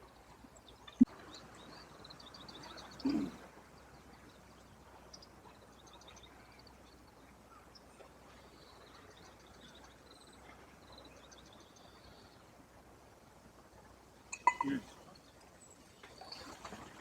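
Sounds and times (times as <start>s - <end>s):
birds chirping: 0.0s - 12.4s, 14.3s - 17.0s.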